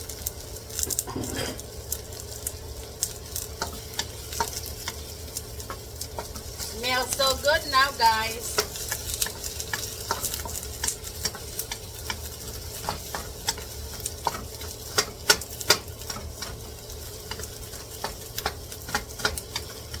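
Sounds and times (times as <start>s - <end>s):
food sizzling in hot oil: 0.0s - 20.0s
utensil scraping a pan: 0.9s - 1.8s.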